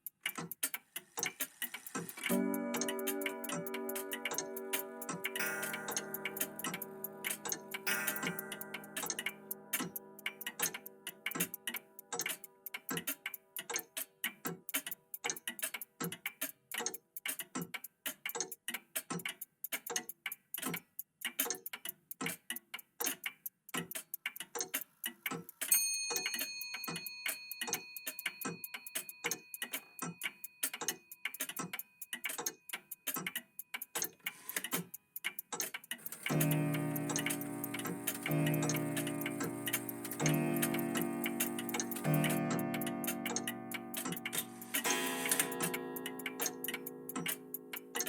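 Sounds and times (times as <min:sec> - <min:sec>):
mechanical clocks ticking: 0:00.0 - 0:48.0
clock chime ringing: 0:02.3 - 0:10.2, 0:36.1 - 0:48.0.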